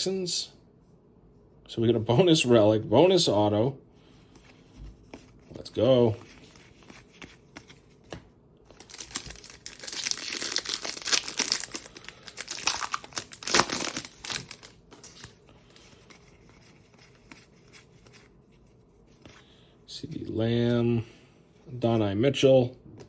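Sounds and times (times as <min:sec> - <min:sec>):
plastic wrapper tearing and crinkling: 0:08.7 - 0:15.4.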